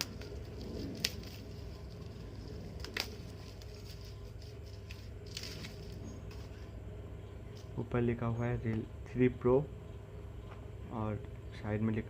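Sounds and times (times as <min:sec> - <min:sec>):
plastic wrapper crinkling: 0:00.0 - 0:06.6
low steady hum: 0:00.0 - 0:12.0.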